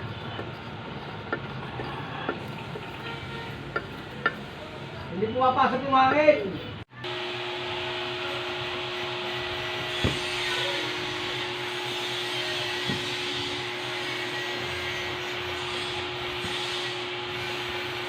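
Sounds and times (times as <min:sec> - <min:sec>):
machine hissing and humming: 0:07.1 - 0:18.0.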